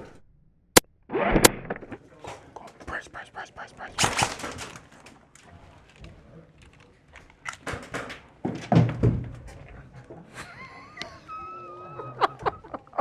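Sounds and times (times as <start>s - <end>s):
airsoft gunfire cracks: 4.0s - 4.8s
heavy thuds: 4.0s - 5.1s.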